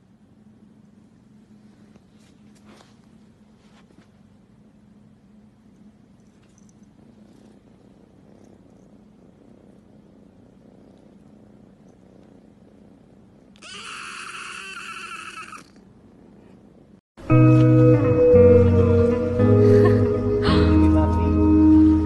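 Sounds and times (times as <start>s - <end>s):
cat purring: 0.3s - 17.0s
cat meowing: 13.6s - 15.8s.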